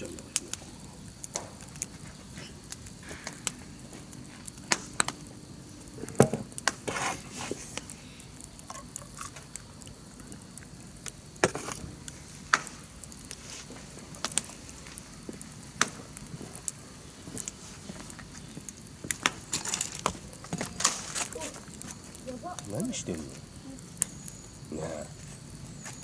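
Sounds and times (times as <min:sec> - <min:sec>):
campfire crackling and popping: 0:00.0 - 0:26.0
faint steady hiss: 0:00.0 - 0:26.0.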